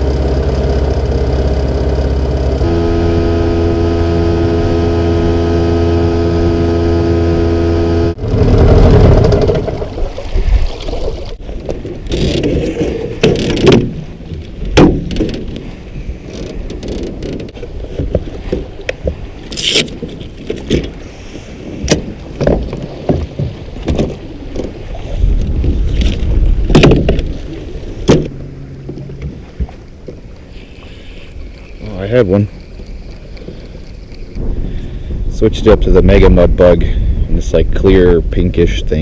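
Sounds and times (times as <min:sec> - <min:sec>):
wind rumbling on microphone: 0:00.0 - 0:39.0
knocks and clicks of gear: 0:11.6 - 0:15.7, 0:16.3 - 0:21.0, 0:21.8 - 0:24.8, 0:25.4 - 0:27.4, 0:28.0 - 0:30.5.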